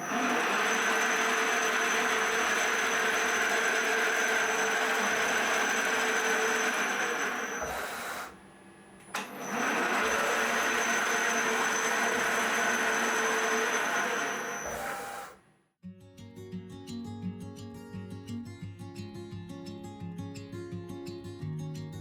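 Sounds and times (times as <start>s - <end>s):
milling machine running: 0.0s - 15.4s.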